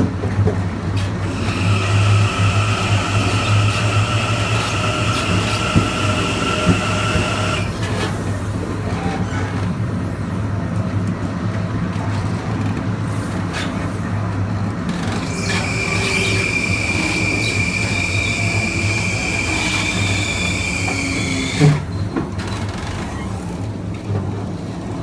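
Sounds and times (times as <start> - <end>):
train running rumble: 0.0 - 25.0
electric train motor whine: 1.2 - 8.1, 14.9 - 22.0.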